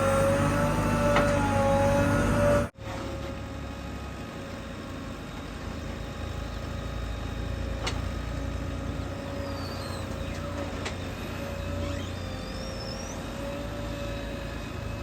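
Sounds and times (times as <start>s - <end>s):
heavy diesel engine running: 0.0s - 11.6s.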